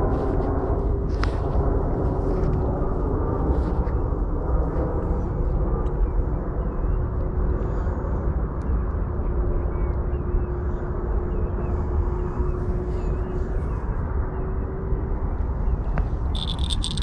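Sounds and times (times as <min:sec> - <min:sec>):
loud low outdoor rumble: 0:00.0 - 0:17.0
thin engine-like hum: 0:10.4 - 0:17.0.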